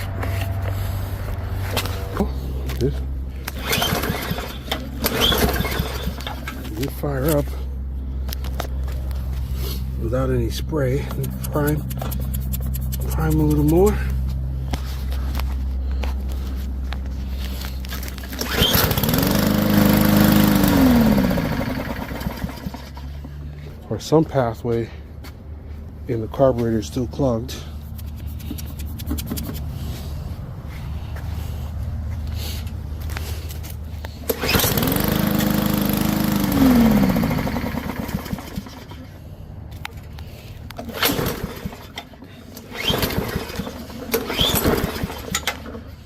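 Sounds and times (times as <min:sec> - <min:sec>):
low hum: 0:00.0 - 0:18.6
push mower engine starting and dying: 0:01.7 - 0:07.6, 0:17.3 - 0:23.3, 0:34.2 - 0:39.3, 0:40.7 - 0:46.0.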